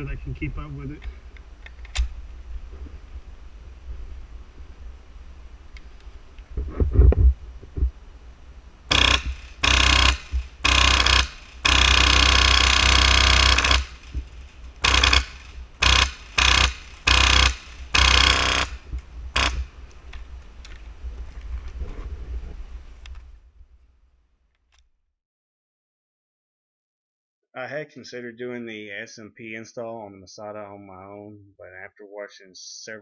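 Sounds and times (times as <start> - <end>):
airsoft rifle firing bursts: 8.9 - 18.8, 19.4 - 19.7.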